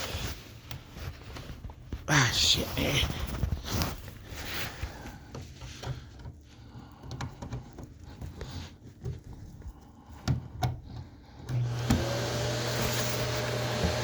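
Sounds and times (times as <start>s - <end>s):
handling knocks and rustles: 0.0s - 11.2s.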